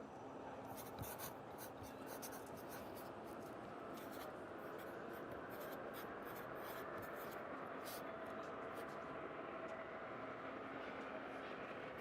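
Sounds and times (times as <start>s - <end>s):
distant city traffic hum: 0.0s - 12.0s
pencil scratching on paper: 0.7s - 3.1s, 4.0s - 8.0s.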